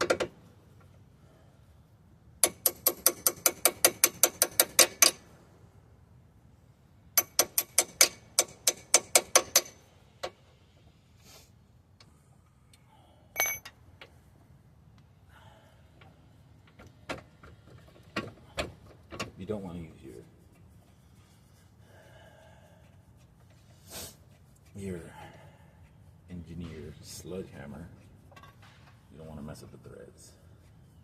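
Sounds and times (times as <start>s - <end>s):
ratchet wrench clicking: 2.4s - 5.2s, 7.2s - 9.8s
metal clinking on metal: 13.4s - 13.8s.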